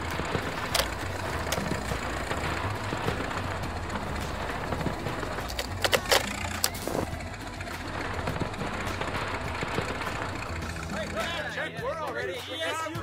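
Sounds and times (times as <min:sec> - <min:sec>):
vehicle engine running: 0:00.0 - 0:13.0
sharp clicks or knocks: 0:04.8 - 0:07.0.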